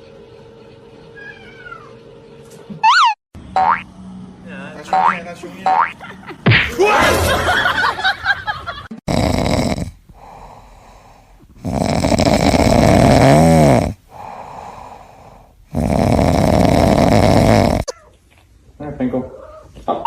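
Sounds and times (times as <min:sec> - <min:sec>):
loud rasping snoring: 0:09.0 - 0:17.9.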